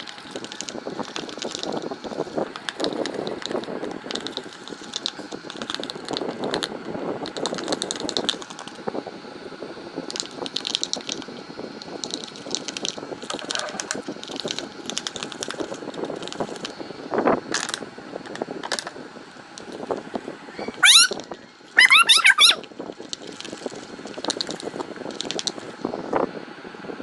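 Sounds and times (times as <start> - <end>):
slime clicking and crackling: 2.6 - 6.7.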